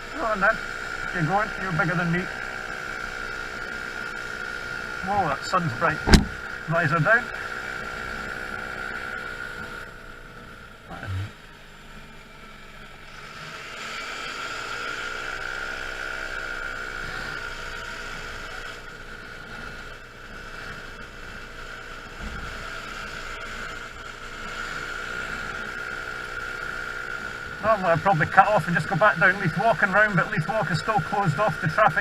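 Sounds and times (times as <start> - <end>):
steady high whine: 0.0 - 13.3, 13.9 - 32.0
scooter engine running: 0.0 - 32.0
brief low knock: 6.1 - 6.4.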